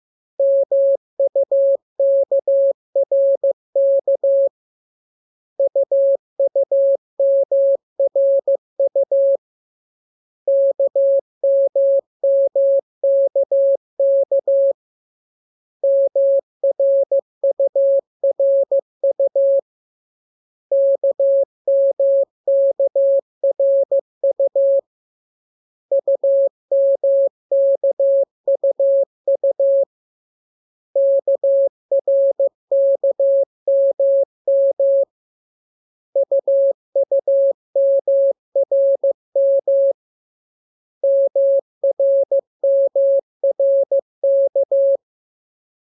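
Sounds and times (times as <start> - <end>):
morse code beeps: 31.0 - 35.1, 36.2 - 40.0, 41.0 - 45.0.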